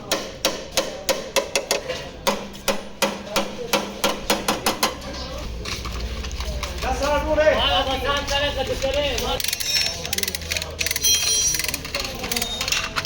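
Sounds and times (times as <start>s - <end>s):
hammer striking sheet metal: 0.0s - 5.0s.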